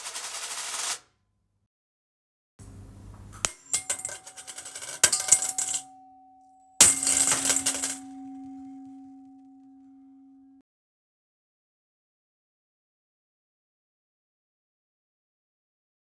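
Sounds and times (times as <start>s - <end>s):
coins clattering: 0.0s - 1.0s, 3.5s - 5.9s, 6.8s - 8.5s
lingering ringing tone: 3.6s - 10.6s.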